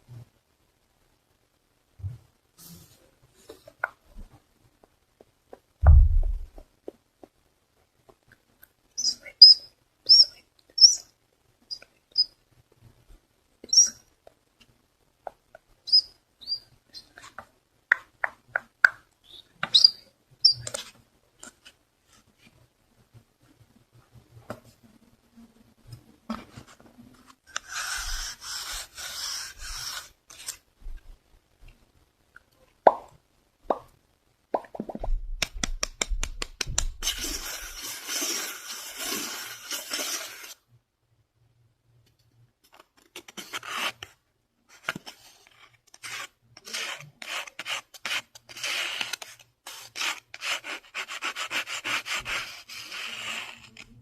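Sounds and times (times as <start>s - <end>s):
scratching on a surface: 27.5s - 30.6s, 35.4s - 40.6s, 44.7s - 54.0s
sharp pops: 32.8s - 33.9s.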